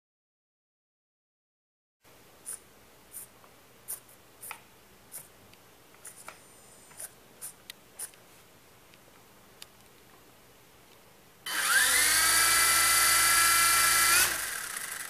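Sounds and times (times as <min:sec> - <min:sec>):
faint steady hiss: 0:02.1 - 0:11.5.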